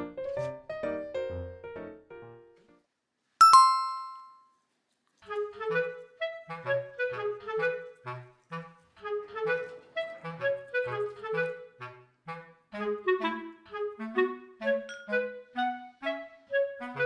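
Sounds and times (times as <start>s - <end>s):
bright chime: 3.4s - 4.4s
light tune with clarinet melody: 5.3s - 17.0s
background music: 9.0s - 17.0s.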